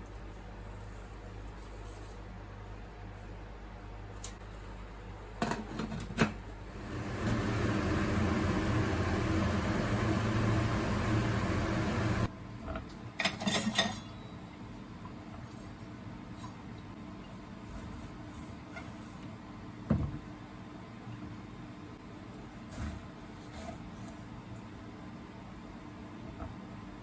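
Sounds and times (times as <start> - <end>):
clinking dishes: 13.2 - 14.3.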